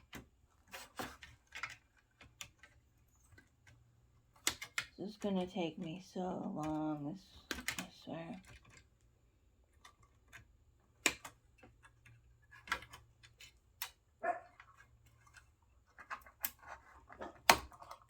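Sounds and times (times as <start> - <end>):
clicks and taps of tools: 11.0 - 14.0
dog bark: 14.2 - 14.6.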